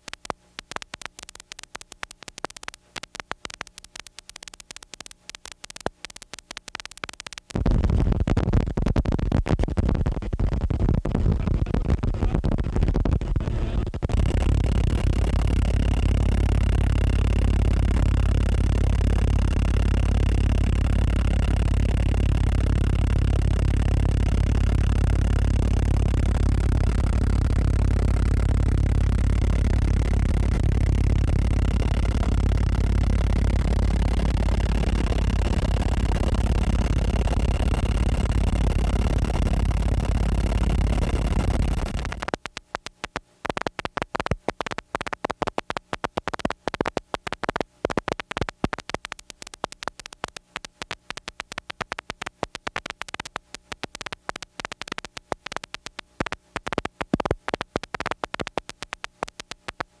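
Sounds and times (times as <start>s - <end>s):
irregular crackle of clicks: 0.0s - 60.0s
static hiss: 0.0s - 60.0s
faint steady tones: 13.2s - 60.0s.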